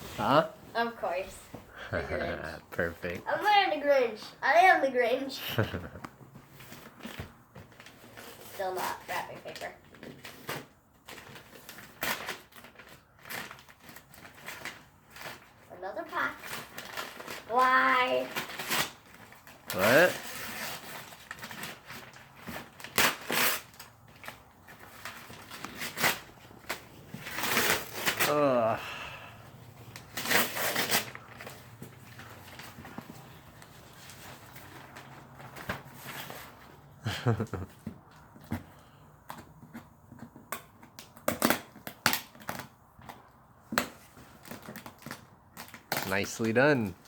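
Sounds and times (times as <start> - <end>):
packaging tearing and crumpling: 7.7 - 15.7, 16.4 - 28.7, 29.9 - 36.6, 40.9 - 43.2, 43.8 - 47.0.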